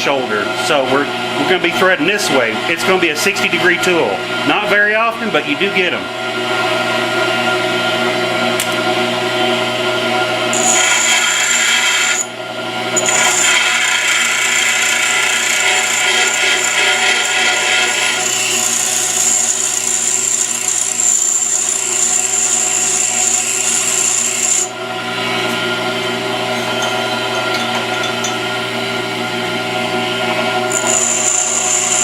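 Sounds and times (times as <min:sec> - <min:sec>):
tool bit grinding on wheel: 0:10.5 - 0:12.3, 0:13.0 - 0:24.7, 0:30.7 - 0:32.0
grinder motor humming: 0:10.5 - 0:32.0.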